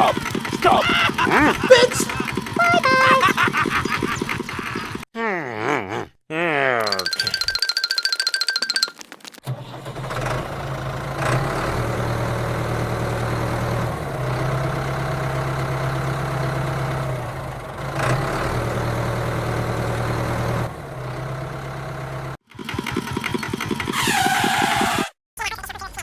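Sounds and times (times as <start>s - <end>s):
tractor engine running: 0.0s - 5.1s, 22.5s - 24.7s.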